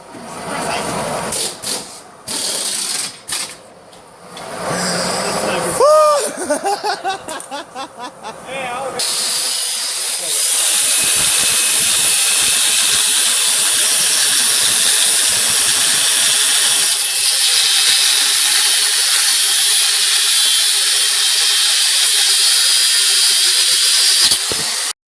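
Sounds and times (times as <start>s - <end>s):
angle grinder cutting metal: 9.0s - 24.9s.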